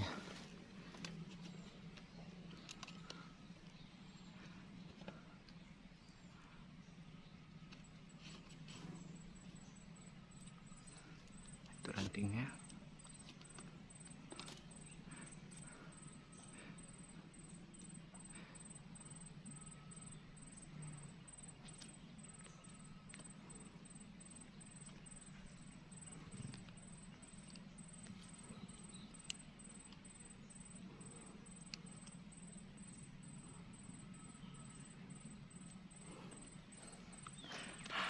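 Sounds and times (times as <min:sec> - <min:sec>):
steady low hum: 0:00.0 - 0:38.0
soft clicks and rustles: 0:00.3 - 0:03.8.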